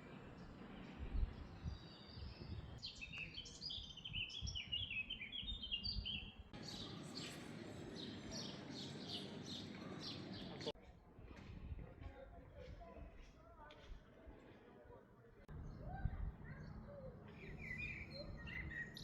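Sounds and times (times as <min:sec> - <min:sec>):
town background hum: 0:00.0 - 0:02.9, 0:06.6 - 0:14.8, 0:15.5 - 0:19.0
songbirds chirping: 0:00.0 - 0:10.8, 0:15.4 - 0:19.0.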